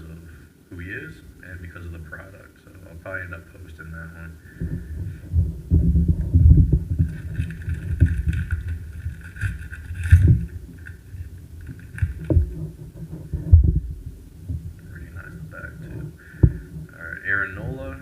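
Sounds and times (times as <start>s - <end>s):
crisp packaging rustle: 6.9s - 13.6s.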